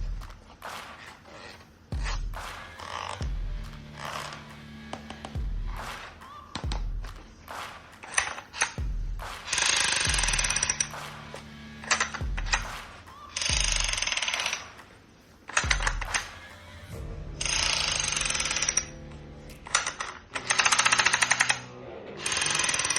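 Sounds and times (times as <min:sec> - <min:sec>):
low music bed: 0:00.0 - 0:22.9
toy gun automatic fire: 0:19.7 - 0:21.6, 0:22.2 - 0:22.9.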